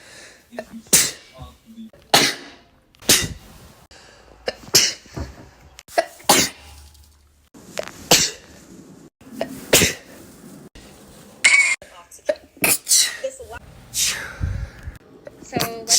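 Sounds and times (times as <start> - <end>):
person sneezing: 0.8 - 1.4, 2.1 - 3.5, 5.9 - 6.6, 8.1 - 8.5, 9.7 - 10.2, 12.6 - 13.3, 14.0 - 14.4.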